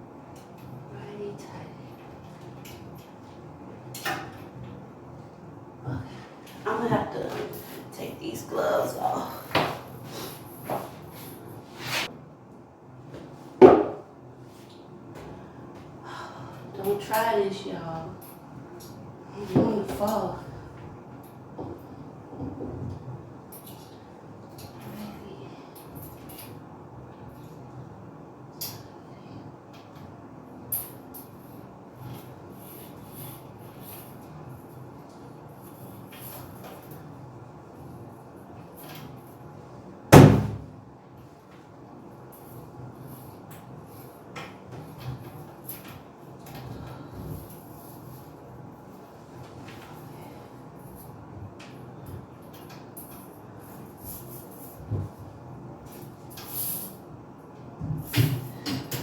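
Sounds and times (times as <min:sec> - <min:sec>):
hands rubbing and scraping: 0:10.0 - 0:12.1.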